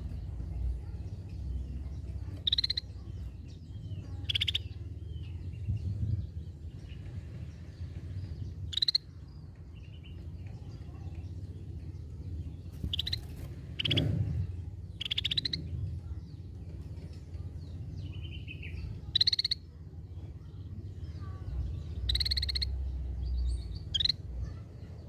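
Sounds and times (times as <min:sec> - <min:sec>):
steady low hum: 0:00.0 - 0:25.0
bird giving buzzy pulsed calls: 0:02.4 - 0:02.9, 0:08.7 - 0:09.1, 0:15.0 - 0:15.6, 0:19.1 - 0:19.6, 0:22.1 - 0:22.7.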